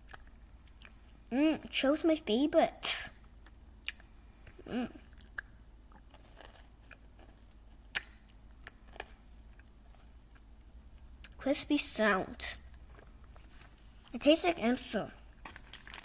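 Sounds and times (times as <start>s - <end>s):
hard candy crunching: 3.3s - 11.4s, 15.4s - 16.0s.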